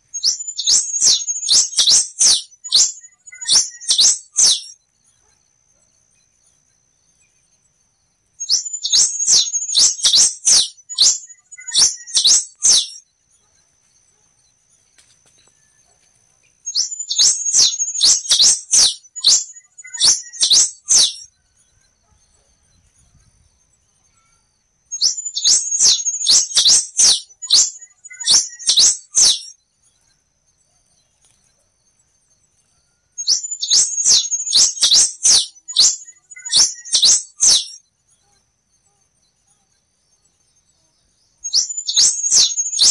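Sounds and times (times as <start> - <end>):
finch singing: 0.1 - 4.8, 8.4 - 13.0, 16.6 - 21.4, 24.9 - 29.6, 33.2 - 37.8, 41.3 - 42.9.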